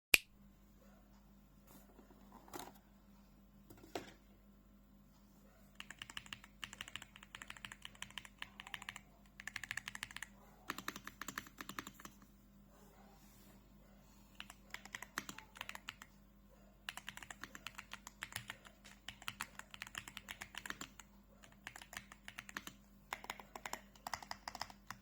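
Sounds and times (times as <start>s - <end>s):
mechanical keyboard typing: 5.8s - 12.2s, 14.4s - 16.1s, 16.9s - 25.0s.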